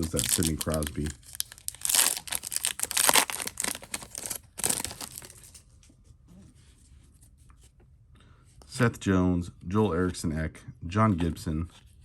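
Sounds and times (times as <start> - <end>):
foil wrapper crinkling: 0.0 - 5.6.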